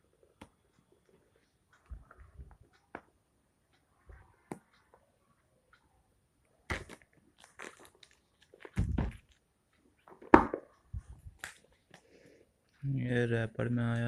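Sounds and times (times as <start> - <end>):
plastic wrapper crinkling: 6.7 - 9.4.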